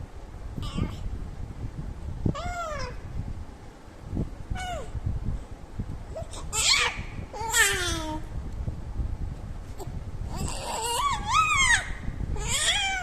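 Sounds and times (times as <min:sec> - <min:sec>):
baby cooing and squealing: 0:06.2 - 0:08.2, 0:10.3 - 0:13.0.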